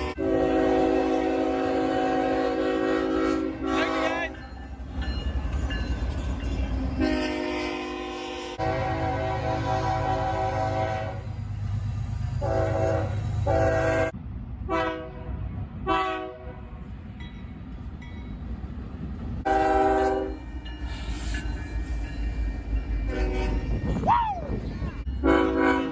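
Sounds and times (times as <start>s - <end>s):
locomotive air horn blasts: 0.0s - 4.4s, 7.0s - 11.3s, 12.4s - 16.7s, 19.4s - 20.4s, 23.1s - 23.8s, 25.2s - 25.9s.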